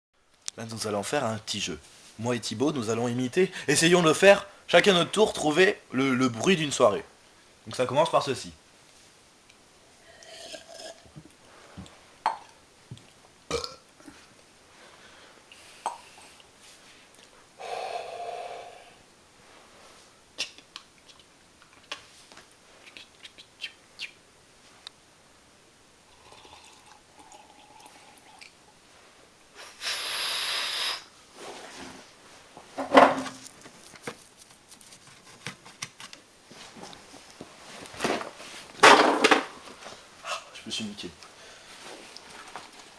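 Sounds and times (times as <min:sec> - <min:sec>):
burp-like mouth sound: 0:10.1 - 0:11.2, 0:13.5 - 0:14.2
loud hiss: 0:29.5 - 0:31.2
small clicks and rustles: 0:33.4 - 0:38.4, 0:42.0 - 0:42.9.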